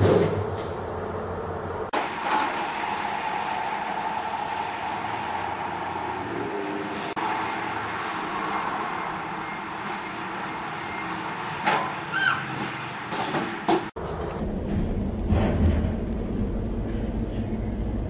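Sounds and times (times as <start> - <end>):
vehicle engine and road noise: 0.0 - 18.0
low rumble: 14.0 - 18.0.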